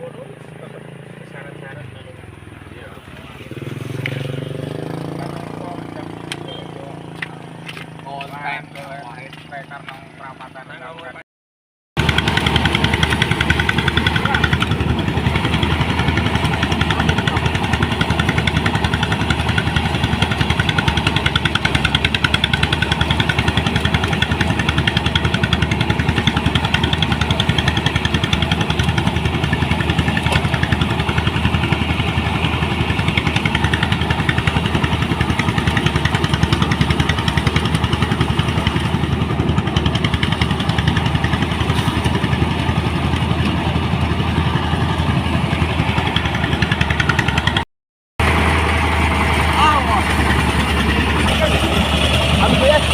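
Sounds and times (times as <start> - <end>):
threshing machine droning: 12.0 - 47.6, 48.2 - 52.9.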